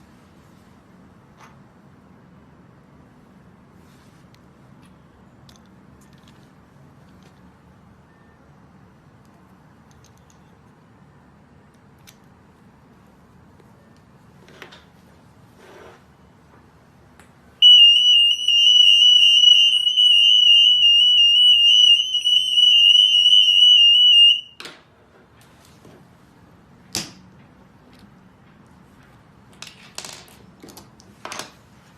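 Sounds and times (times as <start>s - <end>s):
anti-theft alarm high tone: 17.6s - 24.6s.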